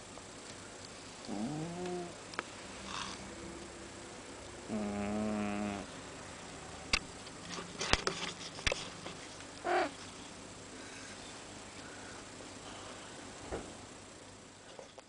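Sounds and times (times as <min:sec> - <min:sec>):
cat snoring: 0:01.3 - 0:02.2, 0:02.8 - 0:03.3, 0:04.6 - 0:05.9.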